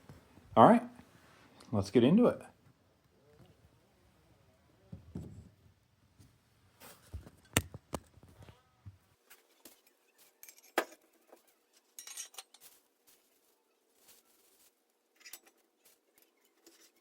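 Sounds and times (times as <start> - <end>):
metallic clinks of bike parts: 9.7 - 12.8, 15.1 - 17.0.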